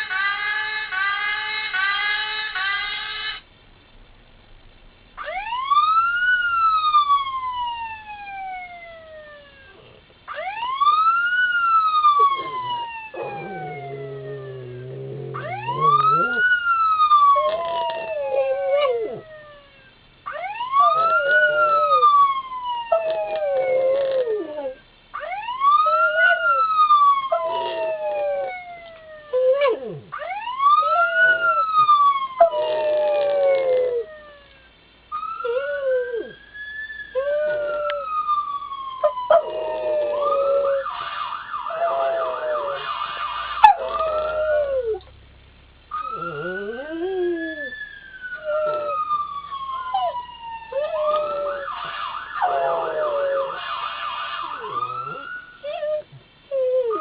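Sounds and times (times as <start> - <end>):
siren yelp: 5.2 - 45.1, 45.9 - 57.0
sirens wailing: 5.2 - 45.2, 45.9 - 57.0
dog howling: 12.2 - 19.7, 27.3 - 34.5, 39.0 - 40.9, 41.7 - 42.8, 43.6 - 45.0, 45.9 - 47.8, 49.9 - 51.7, 52.4 - 53.6, 54.6 - 57.0.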